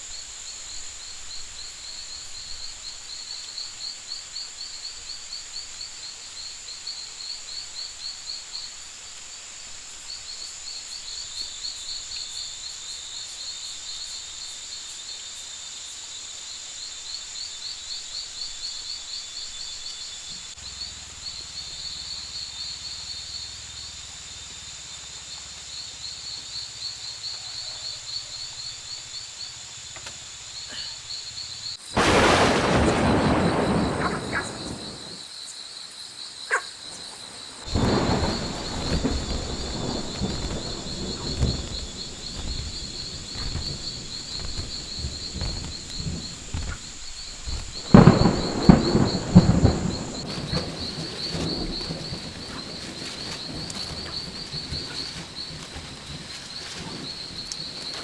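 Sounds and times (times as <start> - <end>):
high insect drone: 0.0 - 58.0
insects chirping in trills: 0.0 - 58.0
thunderclap: 32.0 - 35.2, 36.8 - 58.0.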